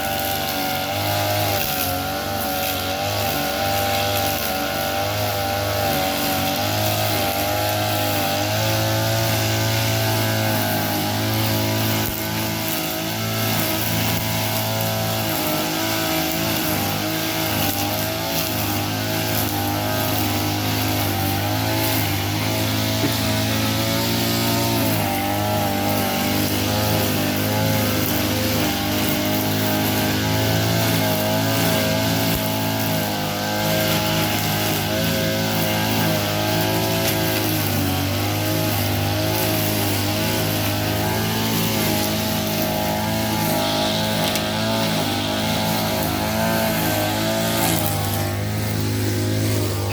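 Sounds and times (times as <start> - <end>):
small petrol engine at high revs: 0.0 - 49.9.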